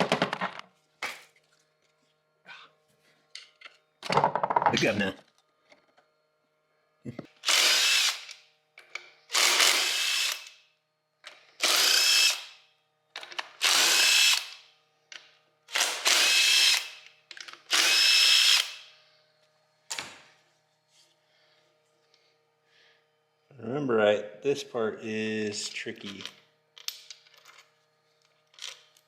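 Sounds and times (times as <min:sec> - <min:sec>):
power drill whining: 0:07.4 - 0:08.4, 0:09.3 - 0:10.5, 0:11.6 - 0:12.5, 0:13.6 - 0:14.6, 0:15.7 - 0:17.0, 0:17.7 - 0:18.8.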